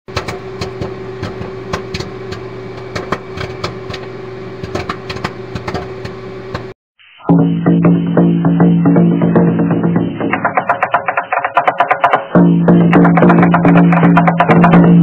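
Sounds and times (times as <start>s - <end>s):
popcorn popping: 0.1s - 6.7s, 8.5s - 15.0s
microwave oven hum: 0.1s - 6.8s.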